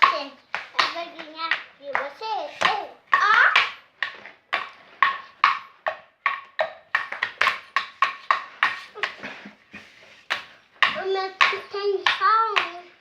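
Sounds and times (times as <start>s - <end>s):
hands clapping: 0.0s - 3.8s.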